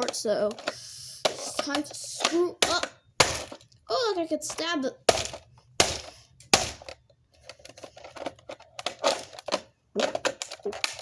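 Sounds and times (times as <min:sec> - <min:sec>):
screwdriver striking plastic case: 0:00.0 - 0:03.8, 0:04.5 - 0:11.0.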